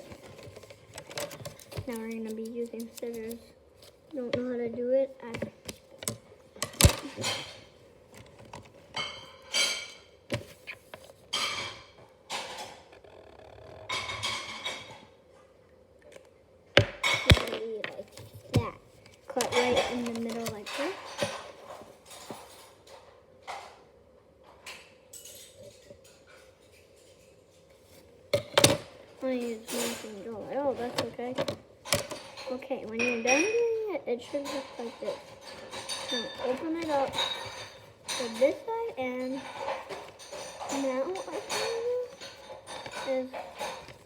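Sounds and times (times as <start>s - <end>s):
paper rustling: 0.0s - 4.3s
scissors snipping paper: 1.5s - 3.5s.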